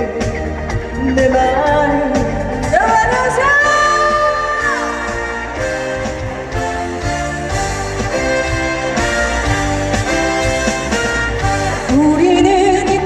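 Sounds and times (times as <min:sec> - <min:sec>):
guitar: 0:00.0 - 0:13.0
steady bass beat: 0:00.0 - 0:13.0.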